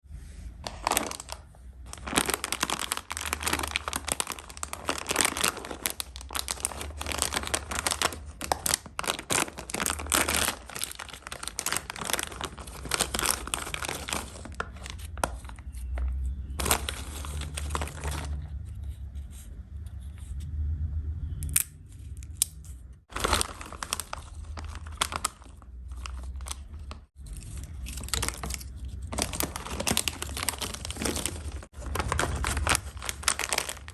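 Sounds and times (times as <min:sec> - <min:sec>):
snack wrappers crinkling and tearing: 0:00.6 - 0:18.6, 0:23.1 - 0:33.9.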